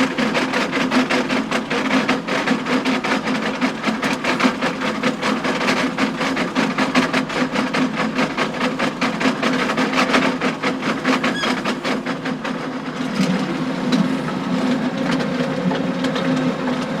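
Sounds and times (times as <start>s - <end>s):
tractor engine humming: 11.1s - 17.0s.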